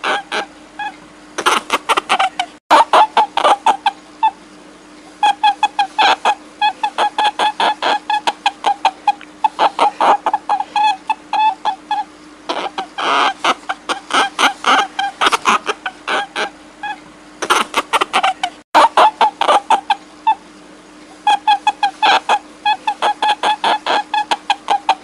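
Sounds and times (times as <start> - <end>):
short pitched animal cries: 0.0 - 4.4, 5.2 - 20.4.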